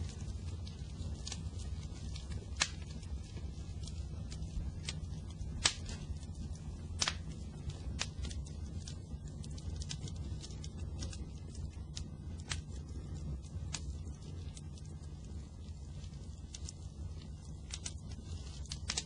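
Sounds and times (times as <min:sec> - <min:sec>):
fire crackling and popping: 0:00.0 - 0:19.0
low rumble of flames: 0:00.0 - 0:19.0.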